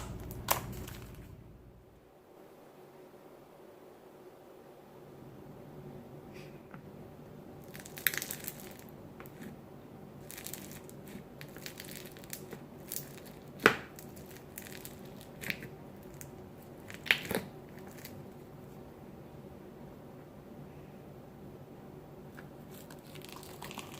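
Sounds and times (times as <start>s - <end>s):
beaded slime crunching and popping: 7.6s - 9.5s, 10.2s - 18.2s.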